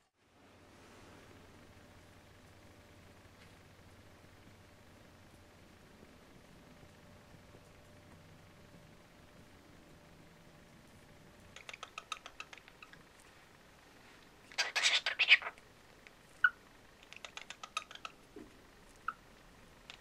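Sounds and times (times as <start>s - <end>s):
cockatiel rapid clicking: 11.4s - 13.0s, 14.5s - 18.2s
harsh bird chatter: 11.6s - 13.0s, 14.5s - 15.6s, 17.1s - 18.2s
high bird chirps: 14.5s - 15.6s.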